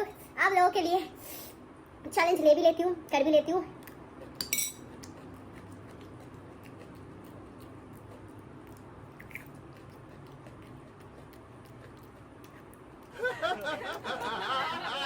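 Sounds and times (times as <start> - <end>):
peppers being chewed: 3.8 - 13.2.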